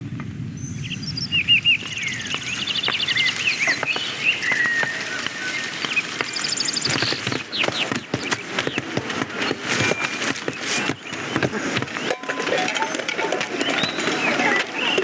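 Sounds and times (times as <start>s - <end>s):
steady low rumble: 0.0s - 4.4s
bird chirps and trills: 0.5s - 15.0s.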